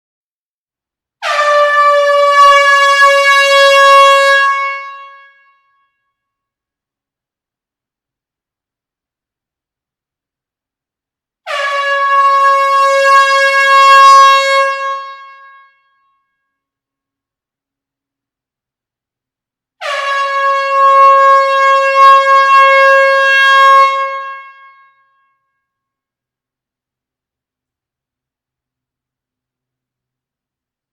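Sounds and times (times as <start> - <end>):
air horn long blast: 1.2 - 5.8, 11.5 - 15.9, 19.8 - 25.1.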